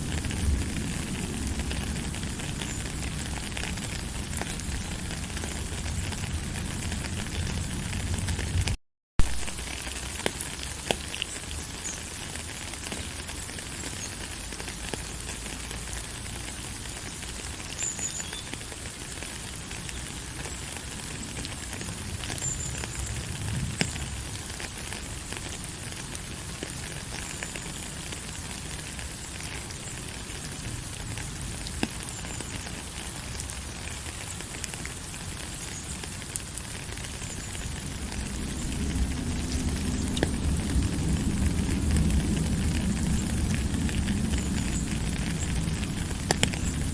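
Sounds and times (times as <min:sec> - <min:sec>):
steady rain falling: 0:00.0 - 0:46.9
low rumble: 0:37.7 - 0:46.9.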